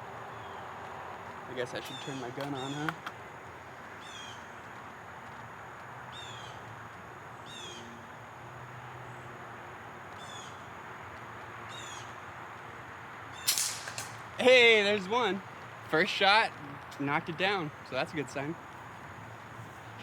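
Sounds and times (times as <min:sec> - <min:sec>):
outdoor hiss: 0:00.0 - 0:20.0
bird calling: 0:01.8 - 0:03.0, 0:04.0 - 0:04.5, 0:06.1 - 0:06.6, 0:07.4 - 0:08.0, 0:10.2 - 0:10.7, 0:11.7 - 0:12.2.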